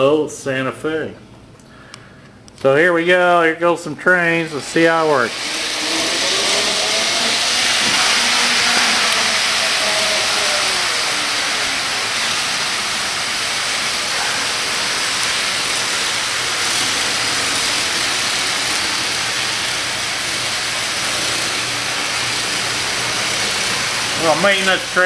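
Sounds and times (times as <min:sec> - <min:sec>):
faint steady hum: 0:00.0 - 0:04.0
model train wheels hissing on track: 0:04.2 - 0:25.0.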